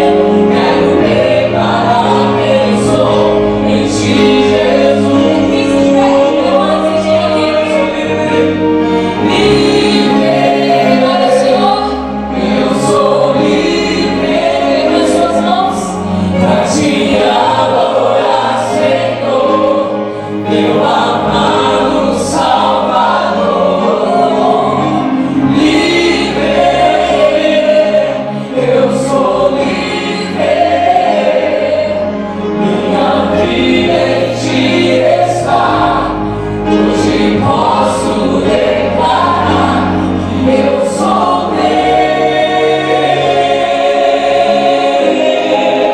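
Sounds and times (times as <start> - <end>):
choir singing worship song: 0.0 - 45.9
instrumental accompaniment: 0.0 - 45.9.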